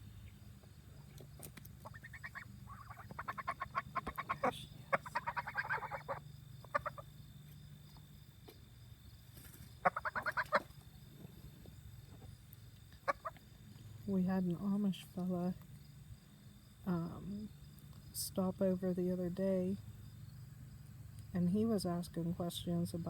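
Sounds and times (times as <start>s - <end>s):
waterfowl calling: 1.8s - 7.2s, 9.8s - 10.7s, 13.0s - 13.5s.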